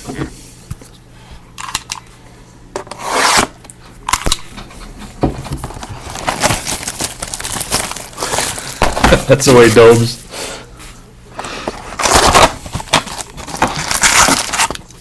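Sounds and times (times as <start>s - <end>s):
cardboard and cards rustling: 5.0s - 10.2s, 11.6s - 15.0s.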